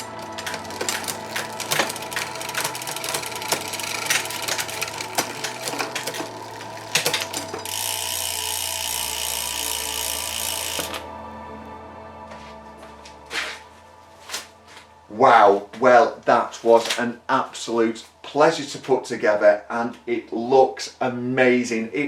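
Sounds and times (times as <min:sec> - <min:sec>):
ratchet clicking: 0:00.0 - 0:11.0
high-pitched ratcheting buzz: 0:00.0 - 0:11.1.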